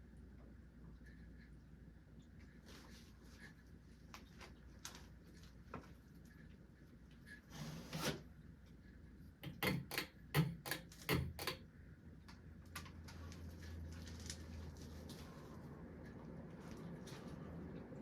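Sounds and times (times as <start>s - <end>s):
sharp mechanical clicks: 9.4s - 11.6s.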